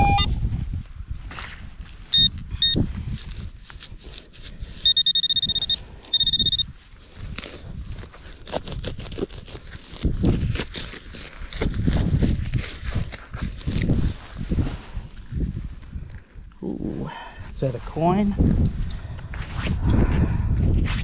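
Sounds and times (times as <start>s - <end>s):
metal detector beeps: 0.0s - 0.4s, 2.1s - 2.9s, 4.8s - 6.8s
digging in soil: 1.2s - 18.4s.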